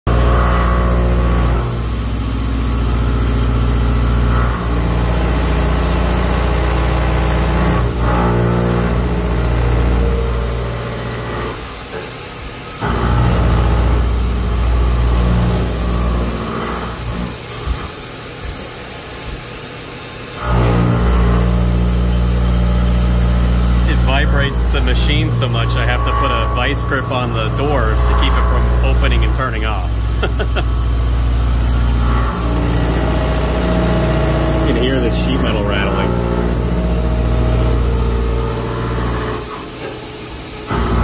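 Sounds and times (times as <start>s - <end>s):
milling machine cutting steel: 0.1s - 11.7s, 20.3s - 41.0s.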